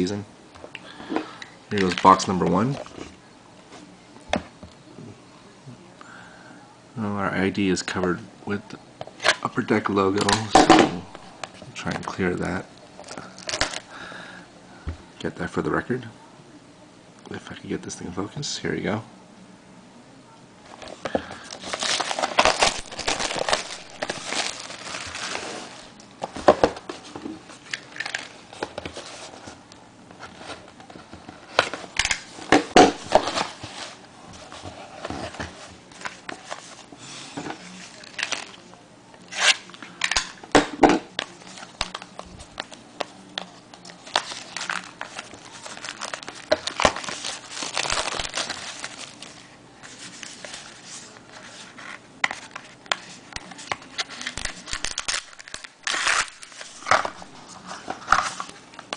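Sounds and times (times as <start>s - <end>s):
plastic shrink wrap crinkling: 1.7s - 3.1s, 13.0s - 13.9s, 20.7s - 29.6s, 30.2s - 36.9s, 37.6s - 38.7s, 41.1s - 58.9s
plastic wrap ripping: 21.4s - 26.0s, 39.3s - 40.3s, 43.4s - 51.6s, 52.3s - 58.9s.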